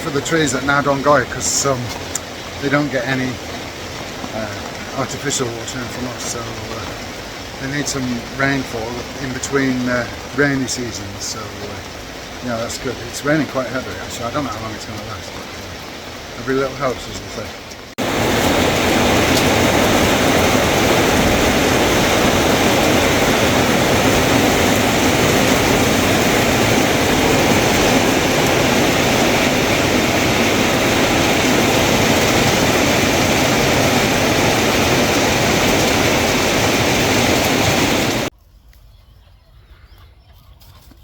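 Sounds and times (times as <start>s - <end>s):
heavy rain falling: 0.0s - 38.3s.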